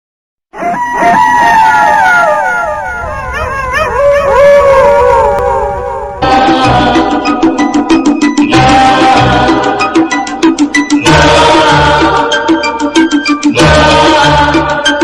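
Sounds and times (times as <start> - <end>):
dogs howling: 0.6 - 6.2
rhythmic percussive music: 6.2 - 15.0.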